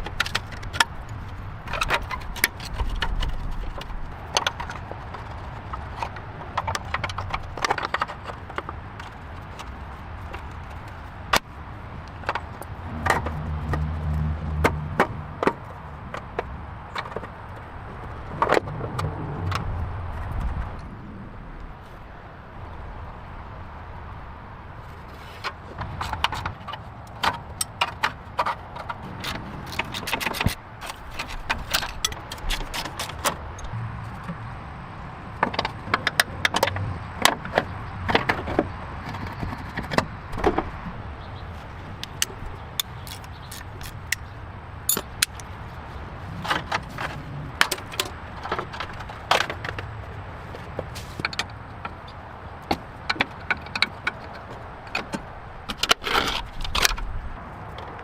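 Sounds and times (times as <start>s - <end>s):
low steady hum: 33.4s - 37.2s.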